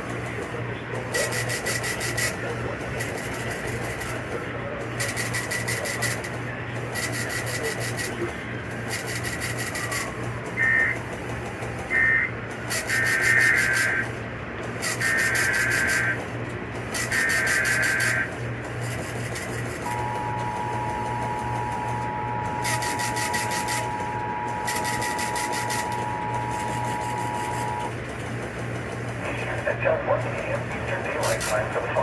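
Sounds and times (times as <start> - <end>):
steady low hum: 0.0 - 32.0
harsh digital data bursts: 1.1 - 2.4, 3.0 - 4.2, 5.0 - 6.3, 6.9 - 8.2, 8.8 - 10.0, 11.9 - 14.2, 14.8 - 16.2, 16.9 - 27.9.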